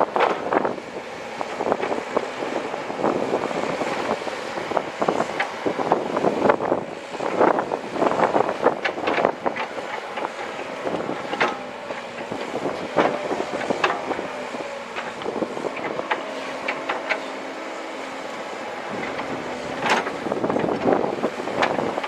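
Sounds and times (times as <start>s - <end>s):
excavator diesel engine: 0.0s - 22.0s
hydraulic whine: 0.0s - 22.0s.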